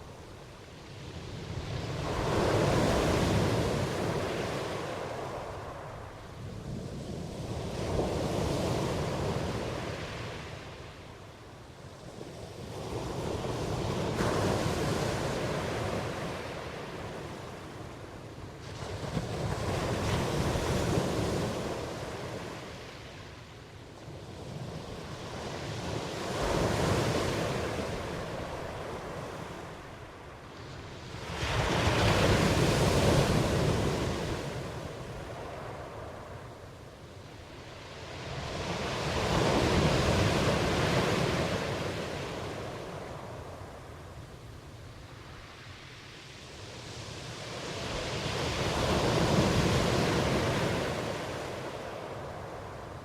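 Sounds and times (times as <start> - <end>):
ocean waves washing in: 24.6 - 53.0.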